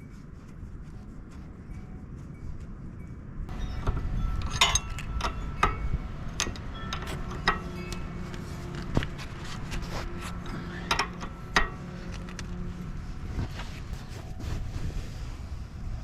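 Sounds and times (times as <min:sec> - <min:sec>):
sharp metallic clinks: 0:03.5 - 0:08.9.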